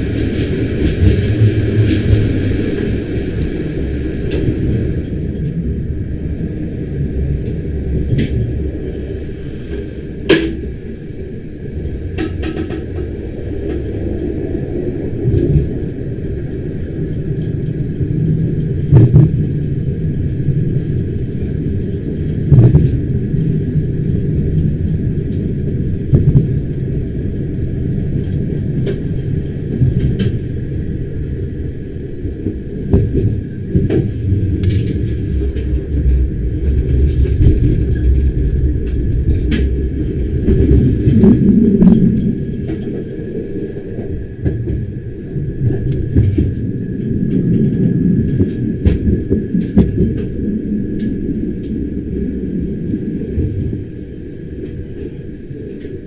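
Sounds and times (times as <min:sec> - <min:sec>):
train rumbling inside carriage: 0:00.0 - 0:56.0
sharp knocks: 0:48.8 - 0:50.2.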